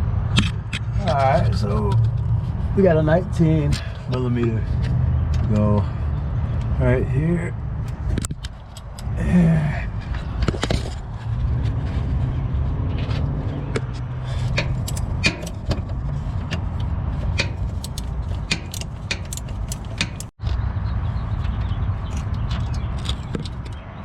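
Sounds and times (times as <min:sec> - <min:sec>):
steady low rumble: 0:00.0 - 0:23.3
socket wrench clicking: 0:14.5 - 0:15.8, 0:17.3 - 0:20.3.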